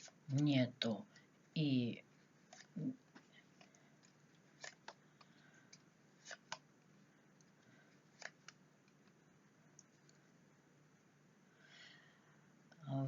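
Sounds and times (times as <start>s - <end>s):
cards clicking and tapping: 2.5s - 6.7s, 7.4s - 9.2s.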